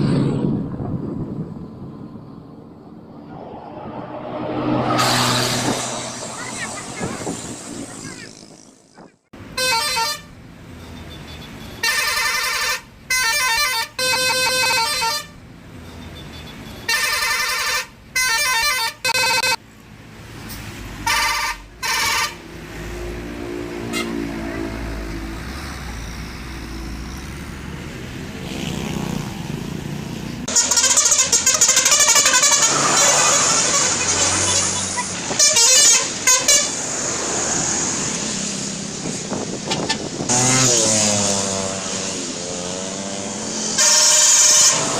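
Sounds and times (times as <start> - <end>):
bus driving by: 0.0 - 13.2, 19.7 - 44.9
multi-tone bus horn tune: 9.5 - 10.4, 11.8 - 15.4, 16.8 - 19.6, 21.0 - 22.5, 23.8 - 25.2, 30.5 - 36.9, 43.6 - 44.9.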